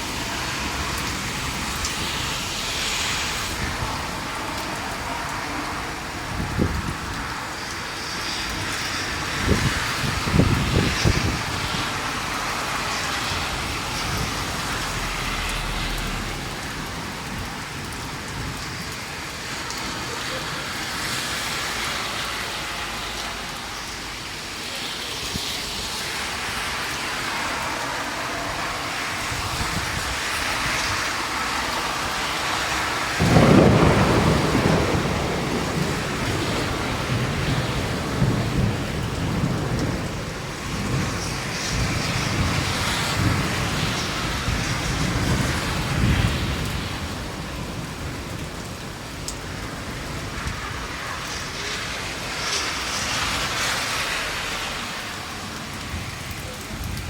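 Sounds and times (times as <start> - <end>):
steady rain falling: 0.0 - 57.0
rolling thunder rumble: 9.4 - 18.8, 33.1 - 49.1.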